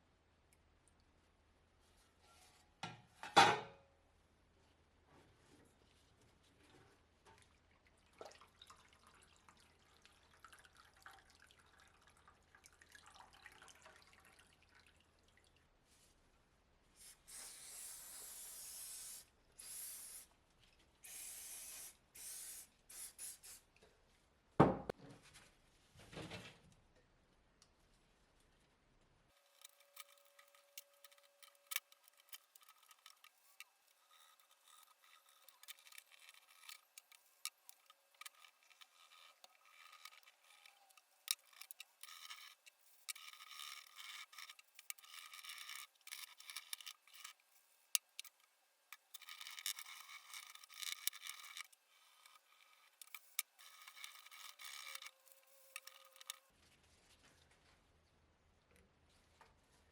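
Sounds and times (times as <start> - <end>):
faint scraping and rubbing: 1.8 - 2.8, 29.3 - 58.2.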